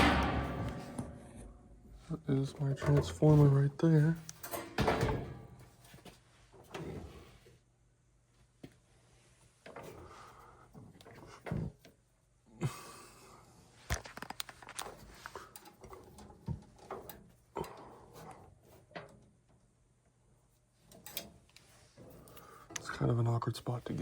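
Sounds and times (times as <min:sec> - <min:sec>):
tools handled clicking and rustling: 0:04.2 - 0:05.1, 0:13.9 - 0:18.4, 0:20.9 - 0:22.9.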